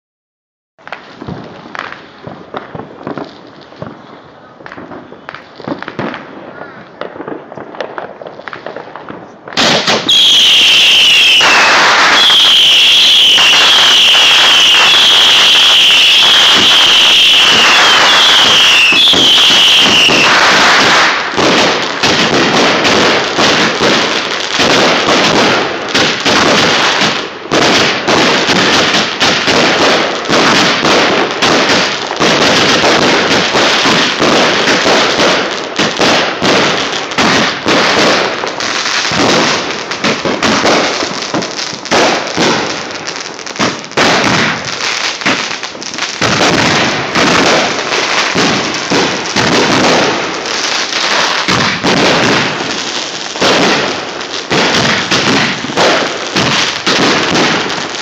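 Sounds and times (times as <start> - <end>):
fireworks crackling pops: 0.8 - 58.0
falling firework whistle: 9.6 - 24.0.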